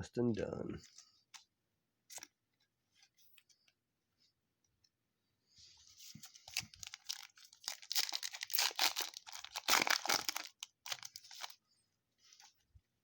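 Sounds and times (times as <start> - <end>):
foil wrapper tearing and crinkling: 6.4 - 11.6.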